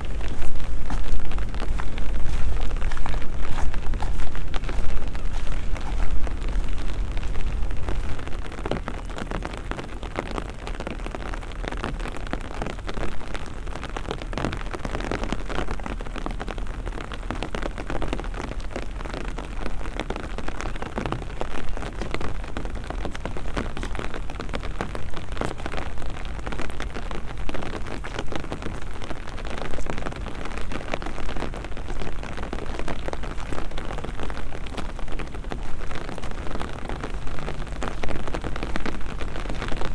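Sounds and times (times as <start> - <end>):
low rumble: 0.0 - 9.1
raindrops pattering: 0.0 - 39.9.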